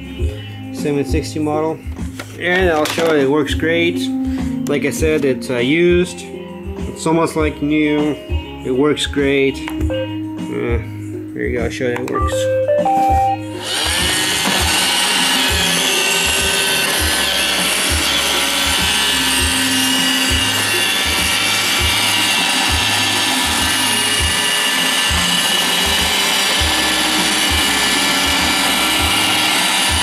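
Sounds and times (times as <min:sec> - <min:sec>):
background music with bass line: 0:00.0 - 0:30.0
robot vacuum whirring: 0:13.6 - 0:30.0.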